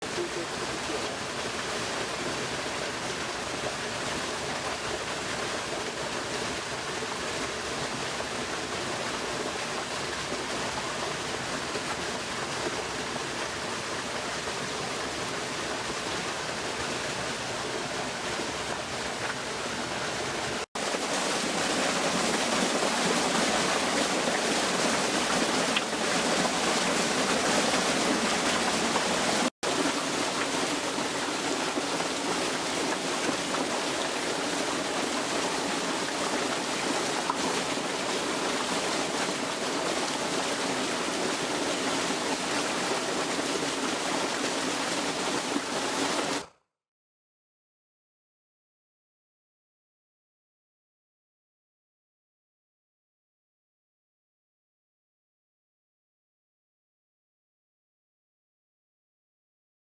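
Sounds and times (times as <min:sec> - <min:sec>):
stream water rushing: 0:00.0 - 0:46.5.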